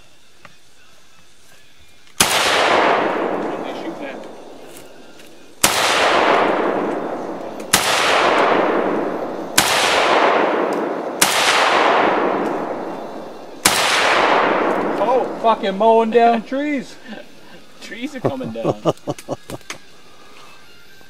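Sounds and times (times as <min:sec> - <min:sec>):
rifle shots with echo: 0:02.2 - 0:16.4.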